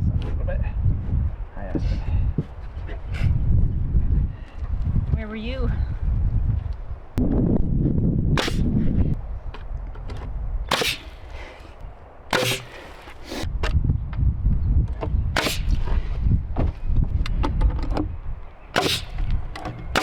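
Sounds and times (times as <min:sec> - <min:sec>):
sharp knocks: 0:08.4 - 0:08.6, 0:10.7 - 0:11.2, 0:12.3 - 0:13.1, 0:15.4 - 0:15.9, 0:18.8 - 0:20.0.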